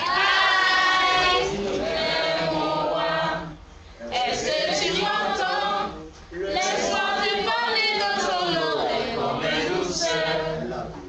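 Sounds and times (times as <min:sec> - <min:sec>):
group singing a cappella: 0:00.0 - 0:11.0.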